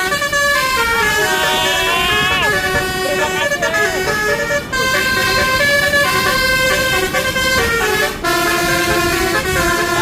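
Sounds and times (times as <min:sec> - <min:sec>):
musical bus horn playing a tune: 0:00.0 - 0:10.0.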